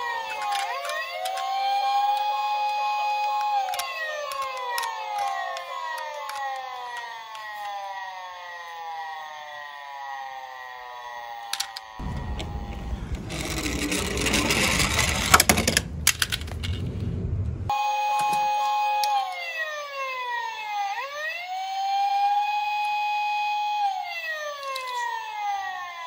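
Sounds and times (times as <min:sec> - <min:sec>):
toy cars rolling on plastic: 0:00.0 - 0:07.8, 0:11.5 - 0:17.0, 0:24.6 - 0:25.2
electronic toy siren wailing: 0:00.0 - 0:12.6, 0:17.7 - 0:26.0.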